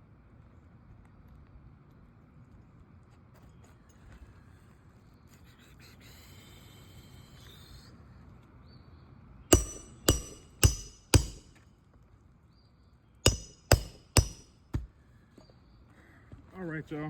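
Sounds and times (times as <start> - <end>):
hammer driving a nail: 9.5 - 11.6, 13.3 - 14.9.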